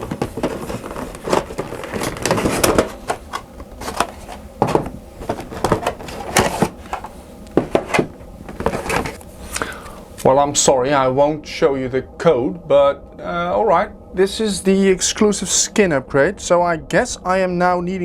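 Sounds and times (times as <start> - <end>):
cardboard and plastic rustling: 0.0 - 10.0.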